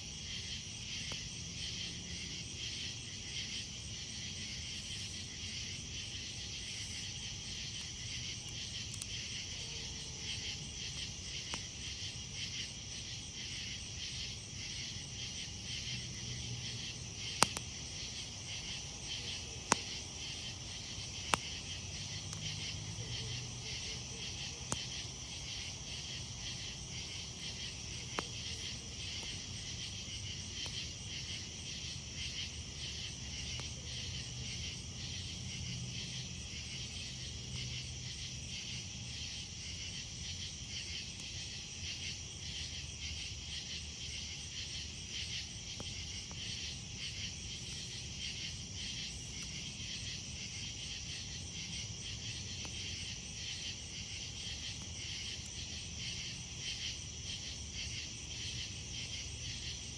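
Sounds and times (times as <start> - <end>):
insects chirping: 0.0 - 59.9
campfire crackling: 0.1 - 59.9.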